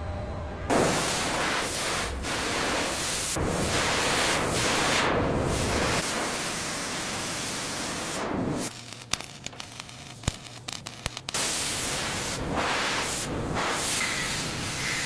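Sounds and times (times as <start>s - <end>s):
sharp clicks: 8.7s - 11.4s
steady hissing noise: 8.7s - 12.6s.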